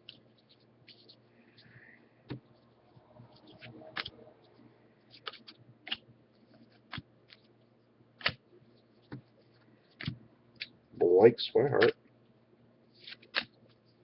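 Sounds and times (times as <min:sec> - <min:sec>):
faint steady hum: 0:00.0 - 0:14.0
cards snapping and clicking: 0:05.2 - 0:06.0, 0:08.2 - 0:08.4, 0:13.0 - 0:13.6.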